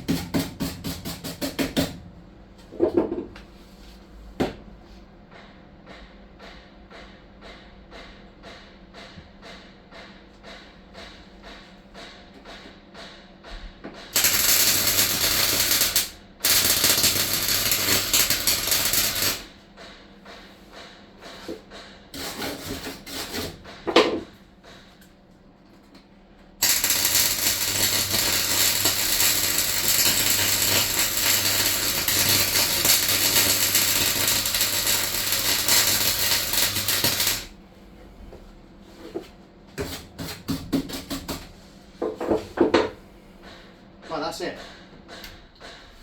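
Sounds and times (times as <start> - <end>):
electric welder crackling hiss: 14.1 - 19.6, 22.2 - 23.6, 26.6 - 37.5.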